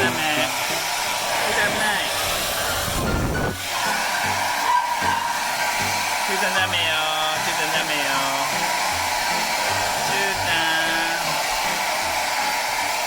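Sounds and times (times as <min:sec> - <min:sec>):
hair dryer blowing: 0:00.0 - 0:13.0.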